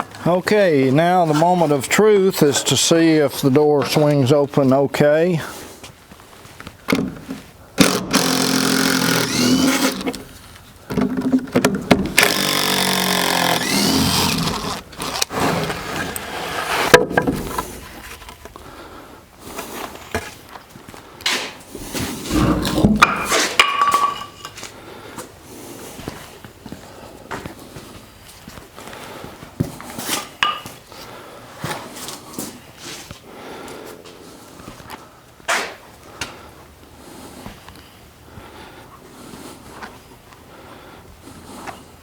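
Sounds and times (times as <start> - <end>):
door hinges creaking: 8.1 - 10.2, 21.8 - 23.6
door scraping: 15.3 - 18.4, 21.8 - 23.6.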